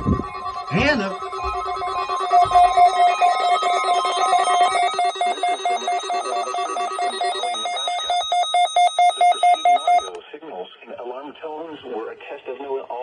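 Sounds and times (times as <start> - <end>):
electronic alert beeping: 0.0 - 10.1
steady alarm tone: 0.0 - 10.1.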